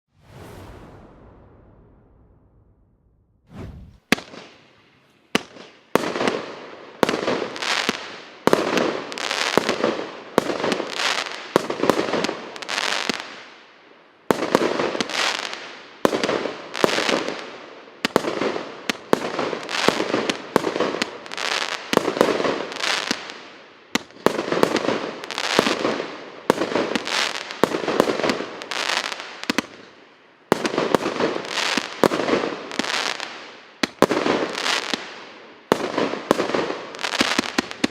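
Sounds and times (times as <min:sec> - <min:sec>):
firework launches: 0:00.1 - 0:05.7.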